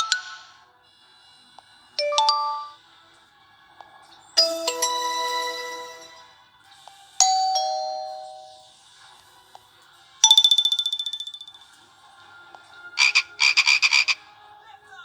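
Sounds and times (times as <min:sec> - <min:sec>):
phone chime tones: 0:02.0 - 0:02.8, 0:04.4 - 0:06.3, 0:07.2 - 0:08.7, 0:10.2 - 0:11.7.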